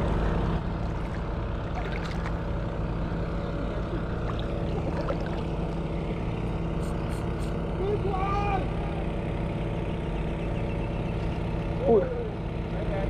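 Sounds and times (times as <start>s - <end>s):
engine humming steadily: 0.0s - 13.0s.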